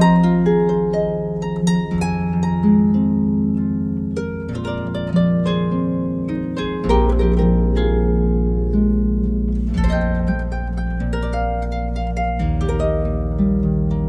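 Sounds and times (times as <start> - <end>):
plucked harp-like notes: 0.0 - 14.0
held low bass notes: 5.4 - 14.0.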